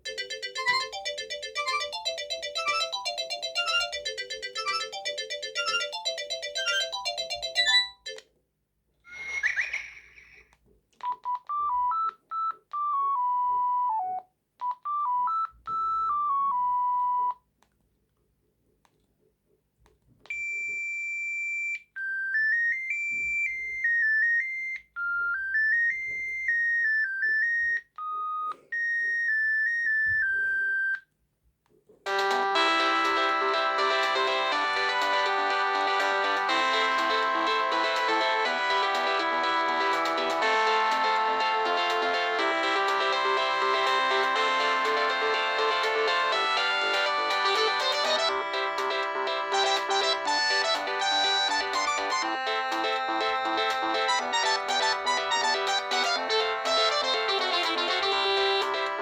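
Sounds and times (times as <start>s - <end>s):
phone ringtone tune: 0.0s - 8.2s, 11.0s - 17.3s, 32.1s - 59.0s
simple electronic melodies: 0.0s - 8.2s, 32.1s - 59.0s.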